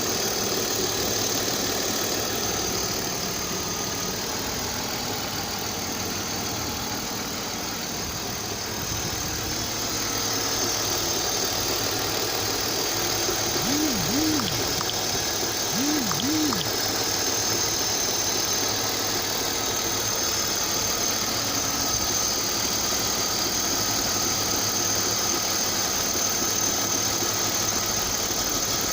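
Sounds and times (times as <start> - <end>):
car engine running: 13.1 - 17.0
dull rhythmic engine knocking: 13.6 - 15.1, 15.7 - 16.8.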